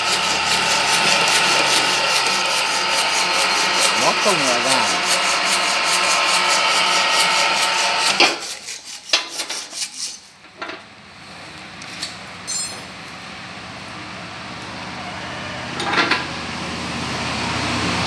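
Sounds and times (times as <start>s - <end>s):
rasping pulsing machine: 0.0s - 9.0s.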